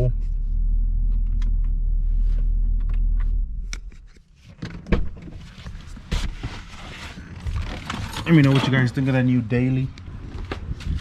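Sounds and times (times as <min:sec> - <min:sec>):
low rumble: 0:00.0 - 0:04.0
thunks and clicks inside car: 0:01.0 - 0:09.2.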